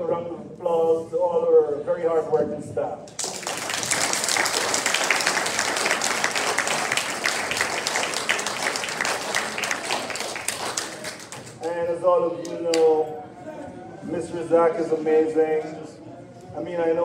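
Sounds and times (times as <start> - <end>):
audience applauding: 3.2 - 11.6.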